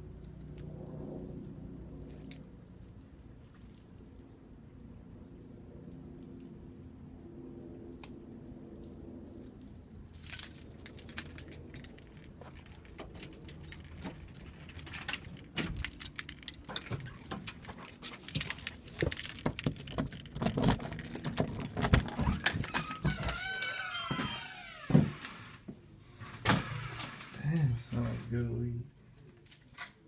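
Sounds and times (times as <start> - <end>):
low vibrating hum: 0.0 - 14.5
keys jangling: 10.2 - 24.0, 29.4 - 30.0.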